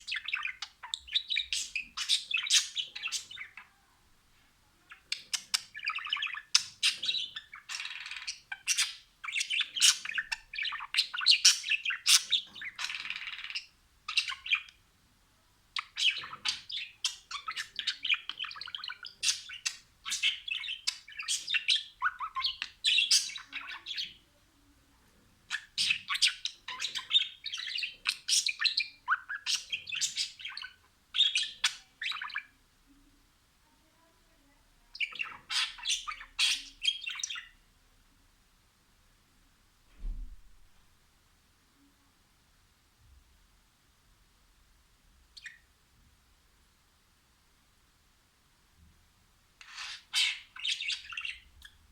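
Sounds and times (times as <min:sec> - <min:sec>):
budgerigars chirping and warbling: 0:00.0 - 0:03.7, 0:04.9 - 0:14.8, 0:15.7 - 0:24.2, 0:25.4 - 0:32.6, 0:34.9 - 0:37.6, 0:49.6 - 0:51.9.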